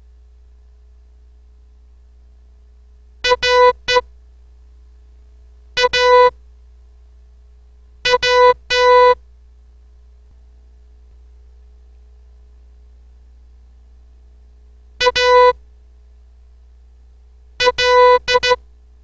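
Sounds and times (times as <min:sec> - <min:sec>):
faint steady hum: 0:00.0 - 0:19.0
morse code beeps: 0:03.2 - 0:04.0, 0:05.8 - 0:06.3, 0:08.1 - 0:09.2, 0:15.0 - 0:15.6, 0:17.6 - 0:18.6.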